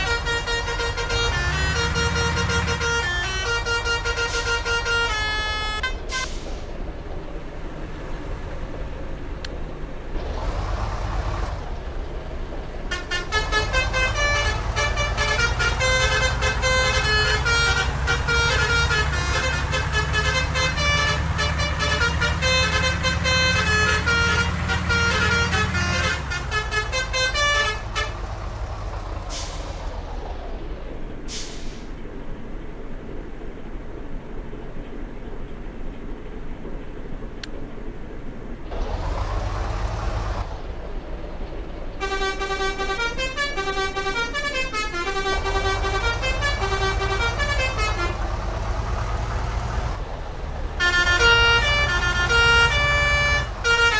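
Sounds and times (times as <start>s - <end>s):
musical air horn tune: 0.0s - 6.4s, 12.9s - 28.3s, 42.0s - 48.3s, 50.8s - 53.9s
bus engine drone: 0.0s - 53.9s.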